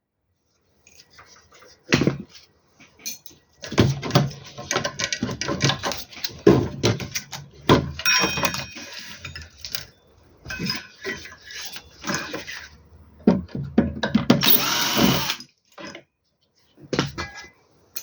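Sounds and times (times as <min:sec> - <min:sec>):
clatter of tools and parts: 0:02.8 - 0:12.8, 0:13.7 - 0:16.0.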